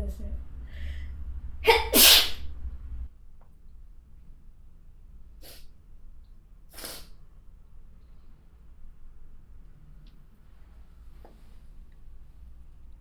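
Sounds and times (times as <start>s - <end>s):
woman sneezing loudly: 1.6s - 2.4s.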